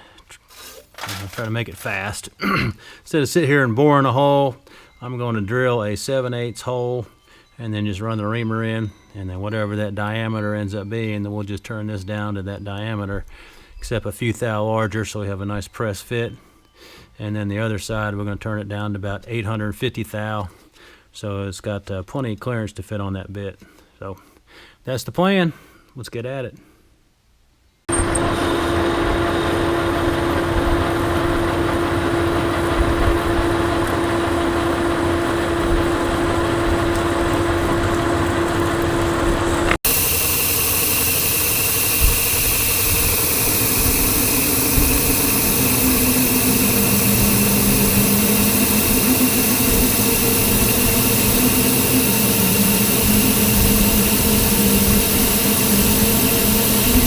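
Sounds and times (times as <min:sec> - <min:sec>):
drill cutting into steel: 0:27.9 - 0:57.0
metal lathe running: 0:27.9 - 0:57.0.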